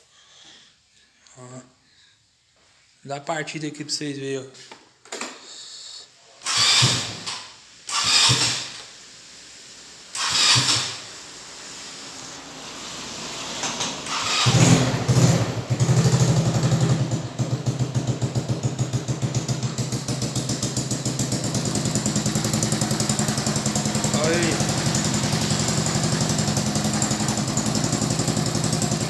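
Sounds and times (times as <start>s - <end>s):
scooter starter cranking: 6.4s - 8.9s, 10.2s - 11.2s, 13.4s - 29.0s
scooter engine idling: 12.3s - 29.0s.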